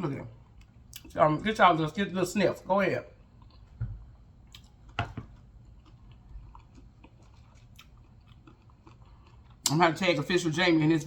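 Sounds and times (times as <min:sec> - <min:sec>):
chips crunching while chewing: 0:04.5 - 0:09.8.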